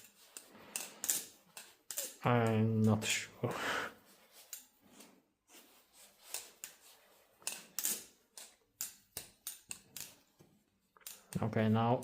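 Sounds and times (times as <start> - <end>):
butterfly knife clicking and clacking: 0.3 - 2.2.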